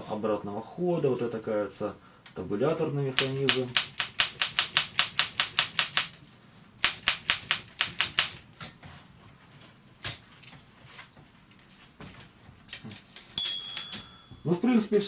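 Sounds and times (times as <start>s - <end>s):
manual typewriter key strikes: 3.2s - 6.2s, 6.8s - 8.4s.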